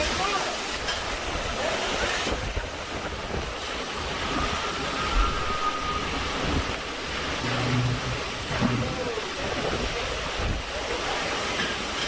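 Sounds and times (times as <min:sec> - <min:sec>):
gusts buffeting microphone: 0:00.0 - 0:11.5
strong wind rushing: 0:02.3 - 0:10.7.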